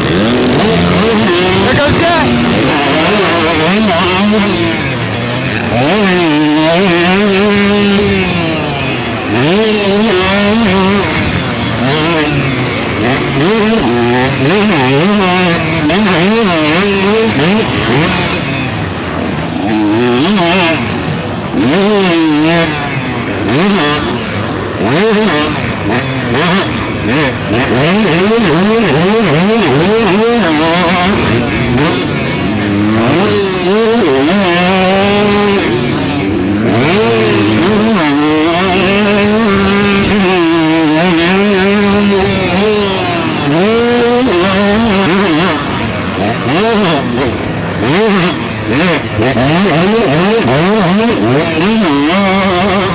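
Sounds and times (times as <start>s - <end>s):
motocross bike engine revving: 0.0s - 52.9s.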